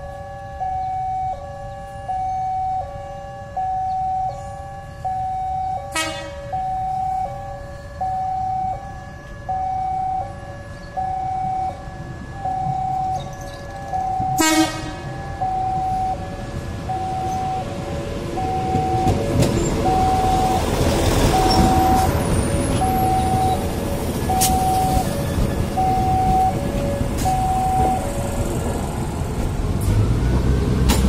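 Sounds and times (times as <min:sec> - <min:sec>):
level crossing electronic sirens: 0:00.0 - 0:29.2
passing train rumble: 0:00.0 - 0:31.0.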